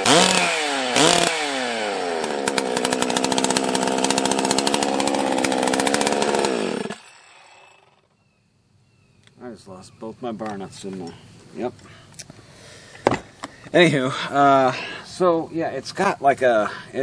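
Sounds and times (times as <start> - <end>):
chainsaw engine running rough: 0.0 - 8.0.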